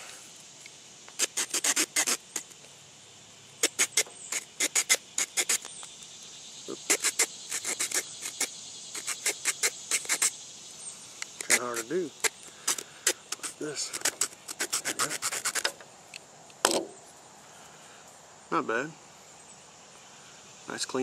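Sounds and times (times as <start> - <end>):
saw blade rasping through stick: 1.2 - 2.2, 3.6 - 5.6, 6.9 - 10.3, 11.4 - 15.8.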